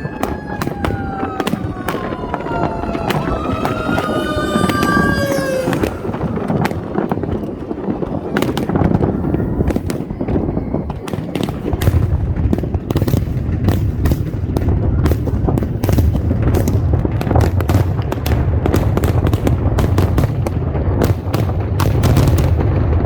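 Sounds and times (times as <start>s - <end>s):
low rumble: 0.0s - 9.8s
firework cracks and bangs: 0.0s - 23.0s.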